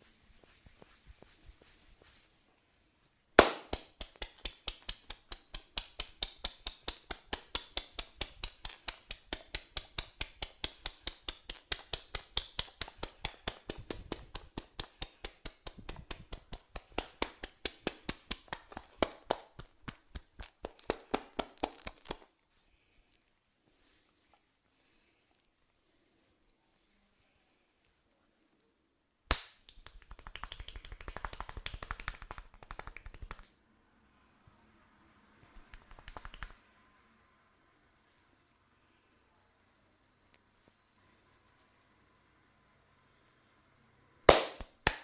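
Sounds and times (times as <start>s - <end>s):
massage gun tapping body: 3.4s - 22.2s.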